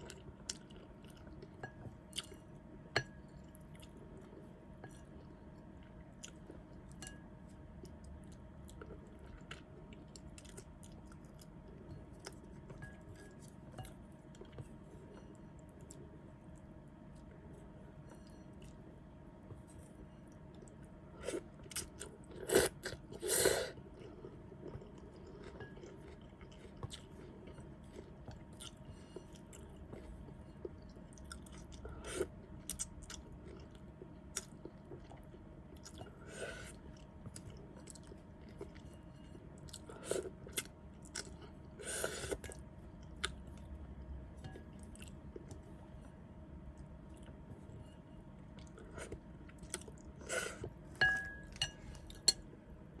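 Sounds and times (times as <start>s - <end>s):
person chewing noodles: 0.0s - 2.4s, 7.8s - 12.6s, 19.9s - 46.0s, 48.6s - 52.3s.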